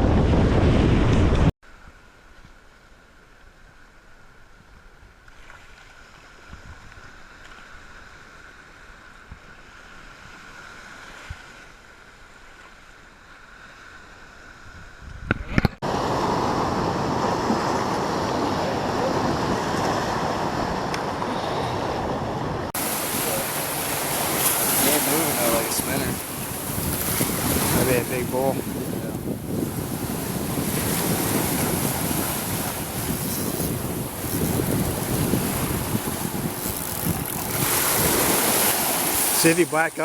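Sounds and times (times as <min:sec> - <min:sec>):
wind buffeting microphone: 0:00.0 - 0:01.5, 0:14.7 - 0:40.0
ocean surf: 0:15.8 - 0:40.0.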